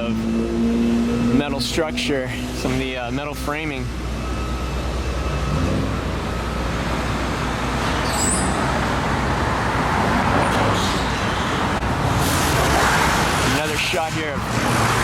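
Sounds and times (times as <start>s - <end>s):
road traffic rumble: 0.0s - 15.0s
brief high squeal: 8.0s - 8.6s.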